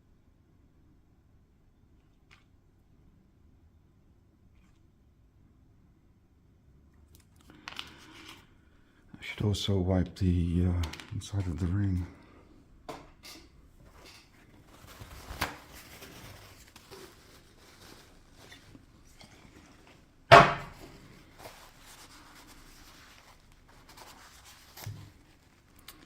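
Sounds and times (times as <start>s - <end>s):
faint rubbing of small parts: 13.3s - 26.0s
loud knock: 20.3s - 20.8s.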